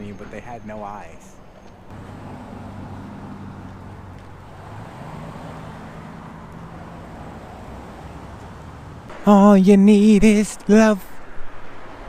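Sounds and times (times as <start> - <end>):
street noise: 0.0 - 12.0
vehicle engine running: 1.9 - 9.1.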